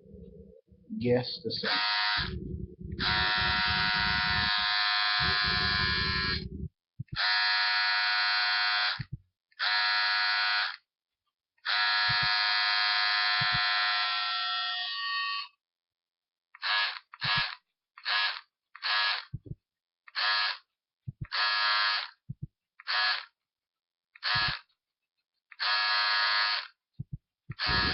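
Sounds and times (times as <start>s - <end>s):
harsh buzzing tone playing tune: 0.0s - 8.8s, 11.7s - 15.5s, 27.6s - 27.9s.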